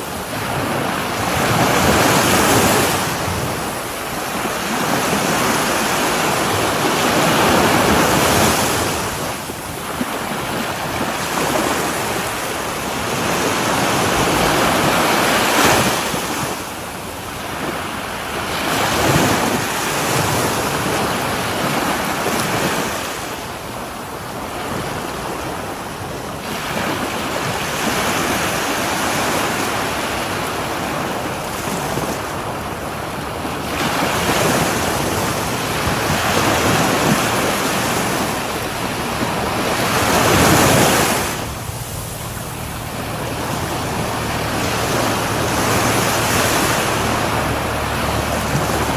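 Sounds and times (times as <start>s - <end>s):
sea waves breaking on shore: 0.0s - 48.9s.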